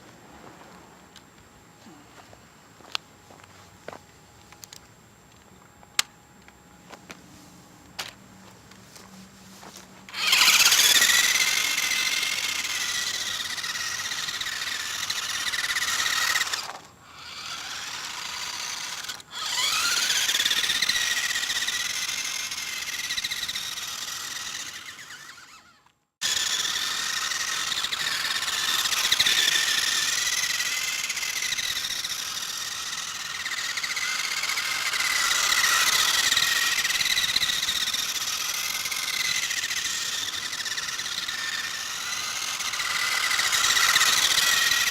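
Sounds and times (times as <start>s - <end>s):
toy car electric motor whining: 9.6s - 44.9s.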